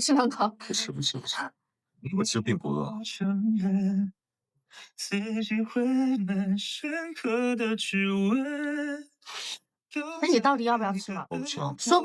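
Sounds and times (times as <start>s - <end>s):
person singing unaccompanied: 10.0s - 12.0s.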